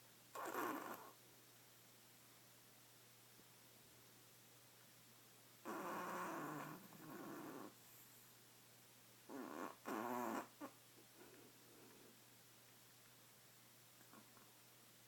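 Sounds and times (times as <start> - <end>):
badger snoring: 0.4 - 1.2, 5.6 - 7.8, 9.3 - 10.7.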